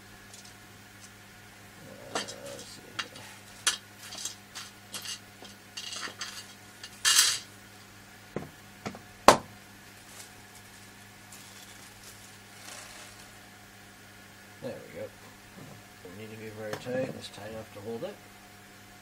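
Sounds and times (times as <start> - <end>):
faint hum: 0.0 - 19.0
metal screws clinking: 3.7 - 5.2
rustling: 9.9 - 13.4.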